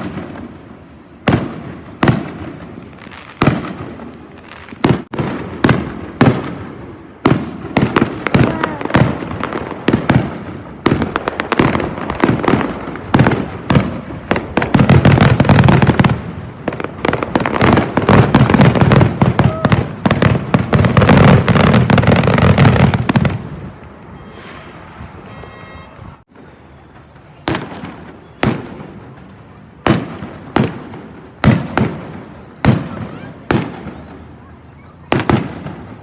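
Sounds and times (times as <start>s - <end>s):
fireworks bangs and crackling: 0.0s - 36.0s.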